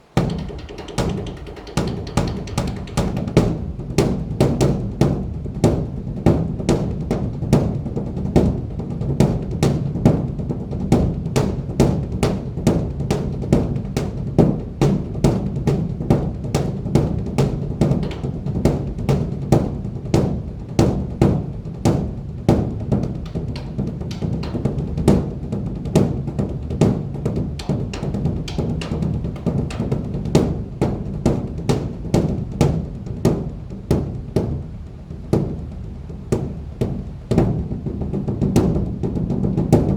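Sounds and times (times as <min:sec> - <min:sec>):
large drum beaten: 0:00.0 - 0:39.9.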